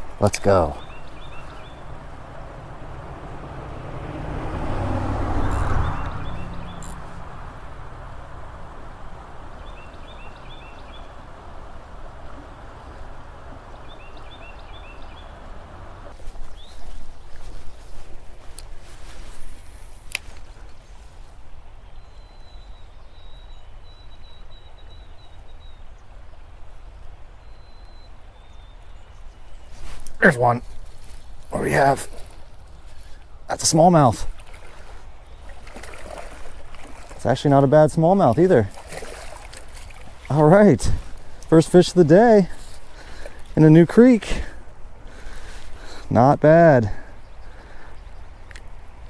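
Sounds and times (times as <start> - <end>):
low outdoor rumble: 0.0 - 16.4
car passing by: 1.2 - 16.2.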